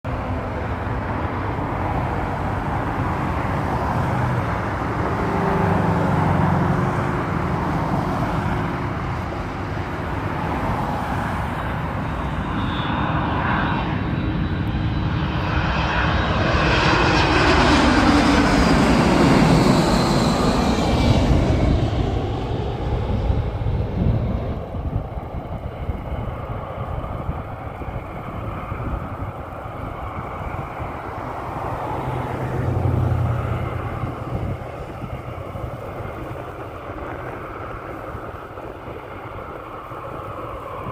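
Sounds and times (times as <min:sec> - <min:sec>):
jet engines rumbling: 0:00.1 - 0:40.9
falling jet whine: 0:02.4 - 0:25.2.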